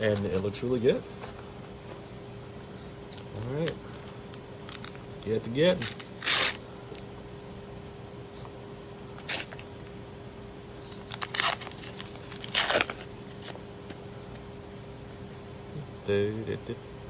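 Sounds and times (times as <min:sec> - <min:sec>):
foil wrapper tearing and crinkling: 0:04.6 - 0:05.0, 0:05.7 - 0:06.6, 0:09.2 - 0:09.7, 0:10.9 - 0:13.6.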